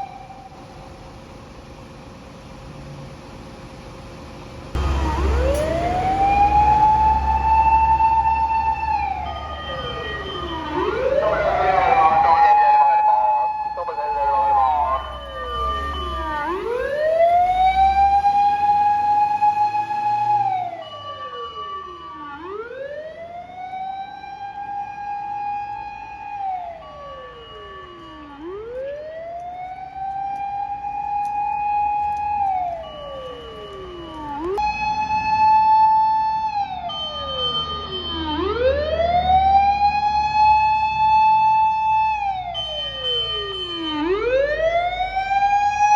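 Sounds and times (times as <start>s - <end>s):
fire engine siren wailing: 0.0s - 1.4s, 4.7s - 45.9s
heavy engine rumbling: 0.0s - 20.7s.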